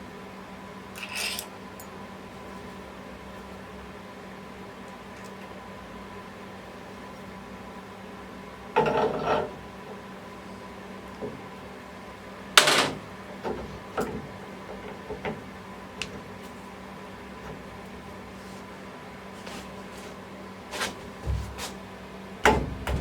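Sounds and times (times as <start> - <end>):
steady background hum: 0.0 - 23.0
rattling scrape of tools: 1.0 - 1.5.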